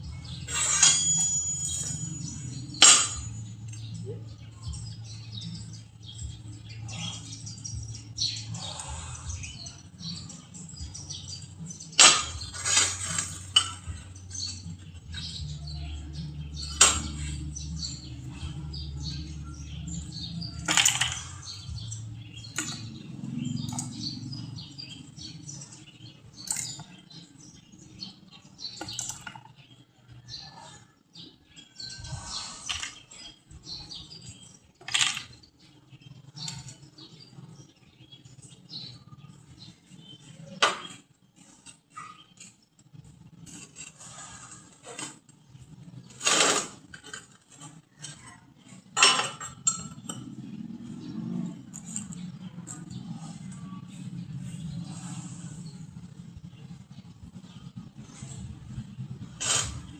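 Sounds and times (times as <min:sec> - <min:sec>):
faint high chirping: 0:00.0 - 0:44.3.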